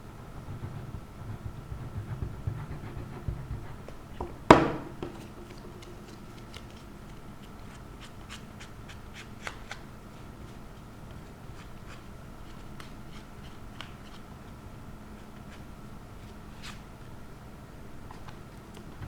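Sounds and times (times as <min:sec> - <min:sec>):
paper rustling and tapping: 0:00.8 - 0:09.8.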